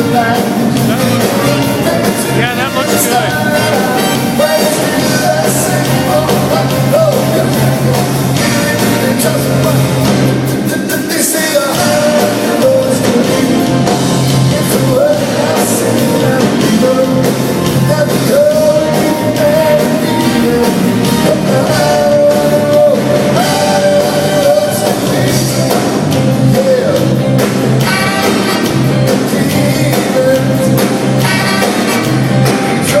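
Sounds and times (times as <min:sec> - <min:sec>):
pulsing bass line: 0:00.0 - 0:10.5
live rock band playing: 0:00.0 - 0:33.0.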